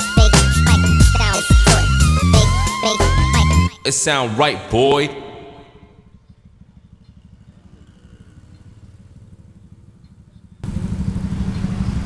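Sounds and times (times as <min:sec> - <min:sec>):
motorcycle idling: 0:05.8 - 0:12.0.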